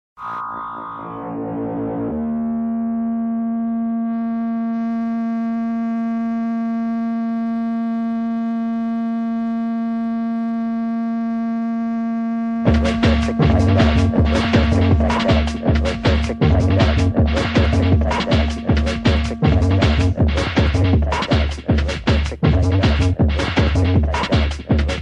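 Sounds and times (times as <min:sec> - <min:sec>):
synthesizer drone: 0:00.2 - 0:25.0
noisy swirl: 0:12.7 - 0:24.6.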